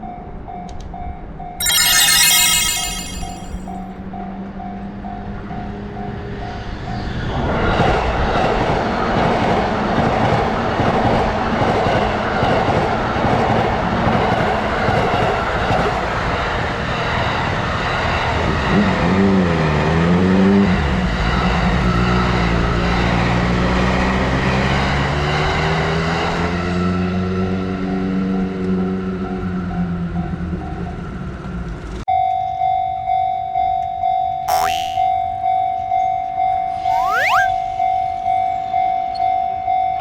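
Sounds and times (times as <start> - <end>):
rising tone: 1.6 - 3.7, 34.5 - 35.1, 36.9 - 37.5
wavering tone: 1.6 - 3.7, 34.5 - 35.1, 36.9 - 37.6.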